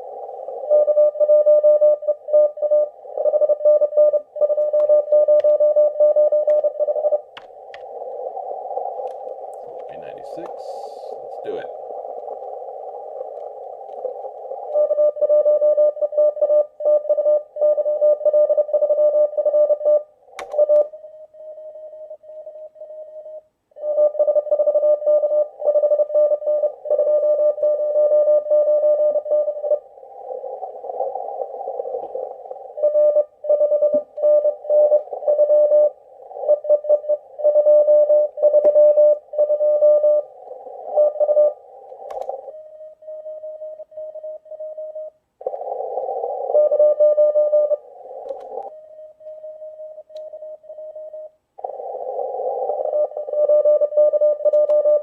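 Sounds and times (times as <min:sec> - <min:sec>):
morse code tone: 0:00.7 - 0:07.3, 0:14.7 - 0:29.8, 0:32.8 - 0:45.2, 0:46.5 - 0:47.8, 0:52.6 - 0:55.0
radio band noise hiss: 0:07.2 - 0:14.7.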